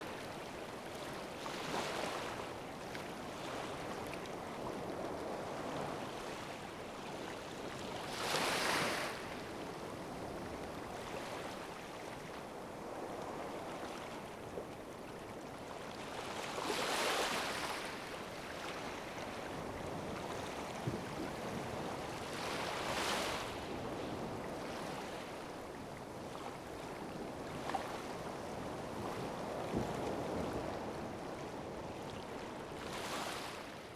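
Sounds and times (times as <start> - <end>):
surf hissing on a beach: 8.0 - 10.3.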